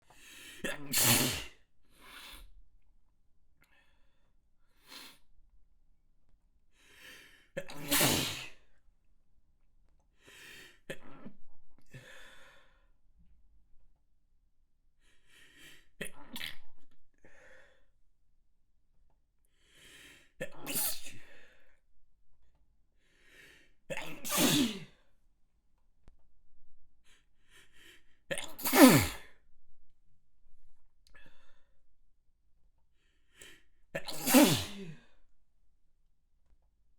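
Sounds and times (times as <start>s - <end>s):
person sneezing: 0.6s - 1.6s, 7.6s - 8.6s, 23.9s - 25.0s, 28.3s - 29.3s, 34.0s - 35.1s.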